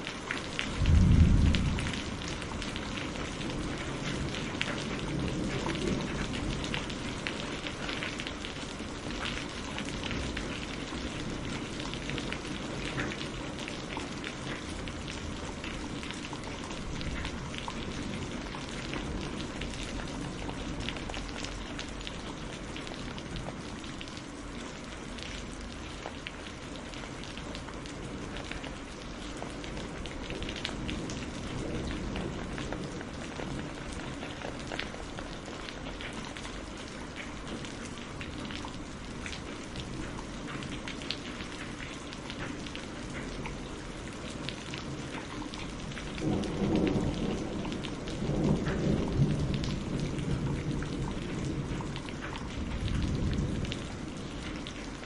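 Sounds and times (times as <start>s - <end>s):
rain falling: 0.0s - 55.0s.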